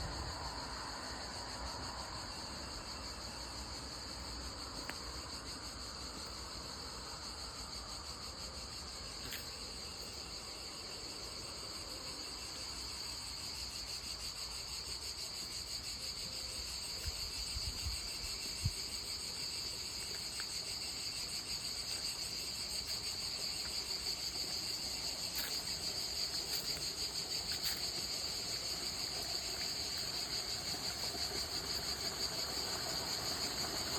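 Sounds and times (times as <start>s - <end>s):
insects trilling: 0.0s - 33.9s.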